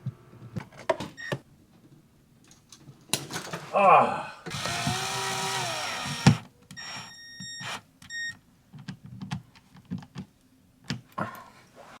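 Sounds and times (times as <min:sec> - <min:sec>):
electronic beeps: 0:06.8 - 0:08.4.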